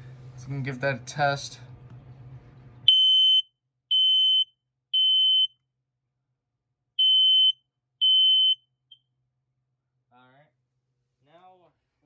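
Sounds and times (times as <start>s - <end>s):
smoke alarm beeping: 2.9s - 5.5s, 7.0s - 8.6s.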